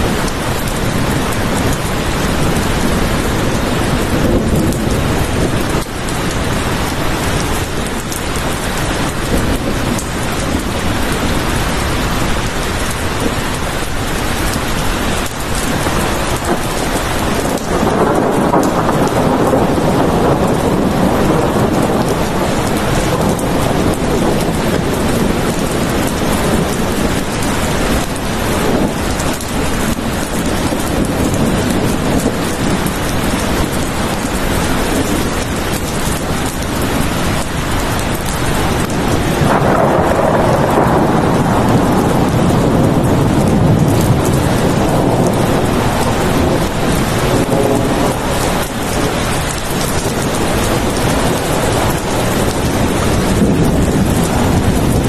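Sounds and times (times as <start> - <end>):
heavy rain: 0.0 - 55.0
low rumble of thunder: 0.0 - 55.0.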